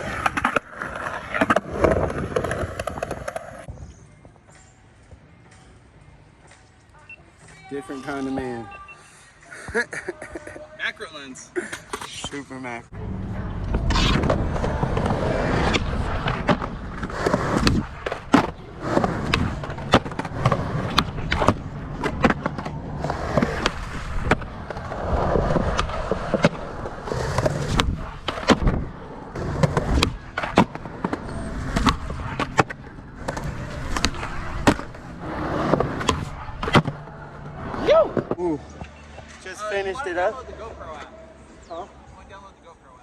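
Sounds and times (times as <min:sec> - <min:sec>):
skateboards clacking: 0:00.0 - 0:03.7, 0:13.3 - 0:39.7
skateboard wheels rolling on concrete: 0:00.0 - 0:08.7, 0:11.7 - 0:42.6.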